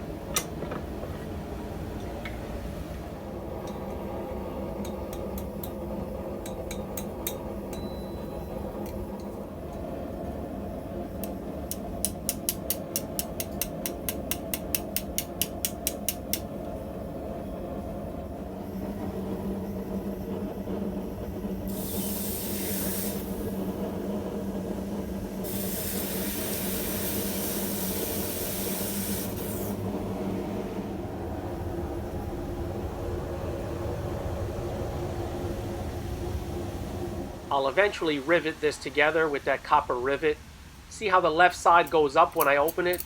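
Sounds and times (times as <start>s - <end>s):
machine hum: 0.0s - 43.0s
hissing grinding noise: 8.7s - 43.0s.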